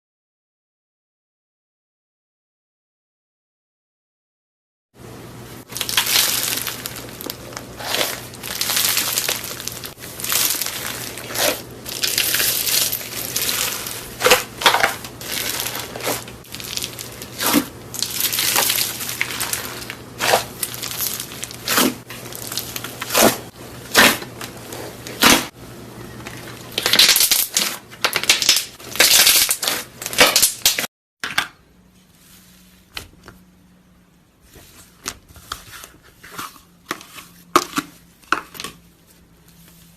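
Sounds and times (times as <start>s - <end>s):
slime crackling and popping: 5.7s - 24.2s, 26.7s - 30.9s.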